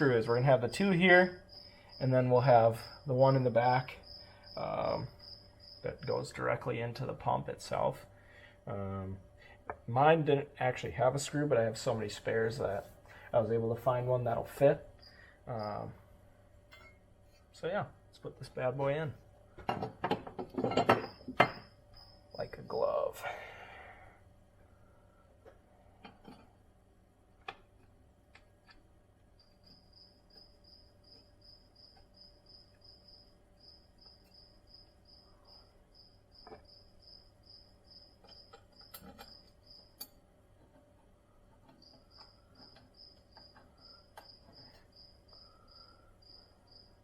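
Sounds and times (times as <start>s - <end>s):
cricket chirping: 0.0s - 7.1s, 13.9s - 16.1s, 18.8s - 24.0s, 28.6s - 40.2s, 41.6s - 47.0s
faint clicks and taps: 27.4s - 28.9s.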